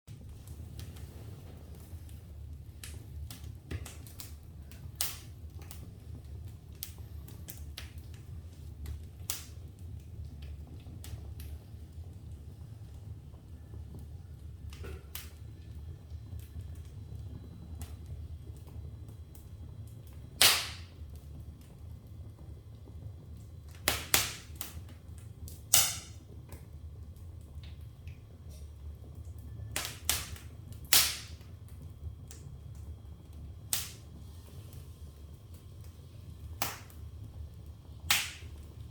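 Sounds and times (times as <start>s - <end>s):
wood fire crackling and popping: 0.1s - 38.9s.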